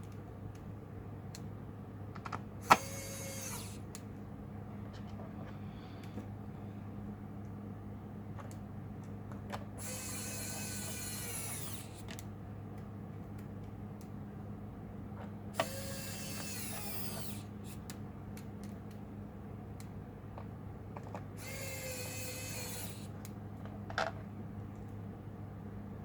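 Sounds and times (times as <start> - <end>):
electric screwdriver whirring: 2.6 - 3.8, 9.8 - 12.1, 15.6 - 17.8, 21.4 - 23.1.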